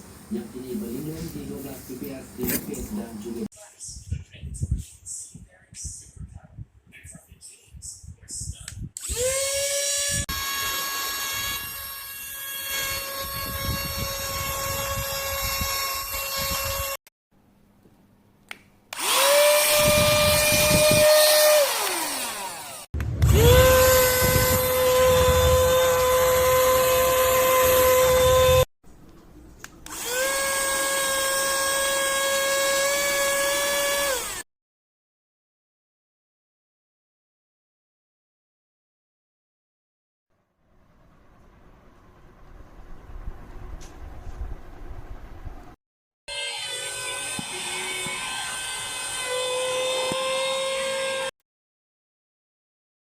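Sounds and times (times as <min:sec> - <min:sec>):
handheld vacuum motor whining: 0:09.0 - 0:17.0, 0:18.9 - 0:28.7, 0:29.8 - 0:34.4, 0:46.3 - 0:51.3.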